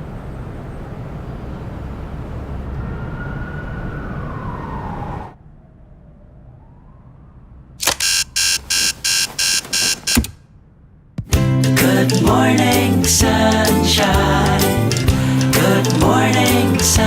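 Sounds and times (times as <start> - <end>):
road traffic noise: 0.0 - 5.5, 7.3 - 12.3, 12.9 - 17.0
emergency siren wailing: 2.2 - 7.8.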